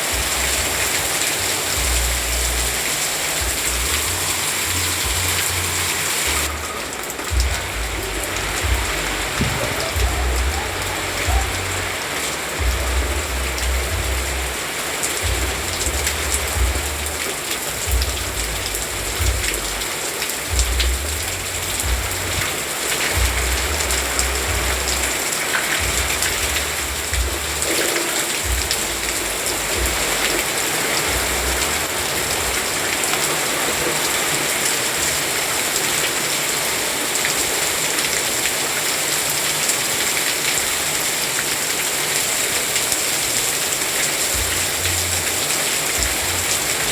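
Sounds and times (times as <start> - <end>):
steady rain falling: 0.0 - 46.9
low rumble: 3.4 - 12.0, 12.6 - 14.6.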